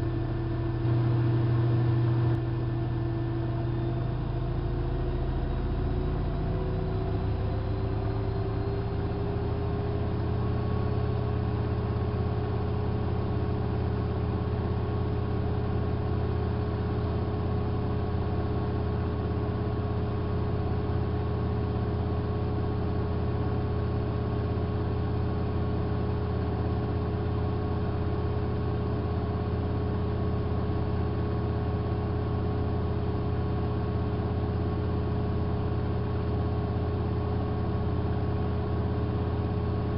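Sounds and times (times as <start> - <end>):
low hum: 0.0 - 5.4
washing machine motor whine: 0.0 - 9.9.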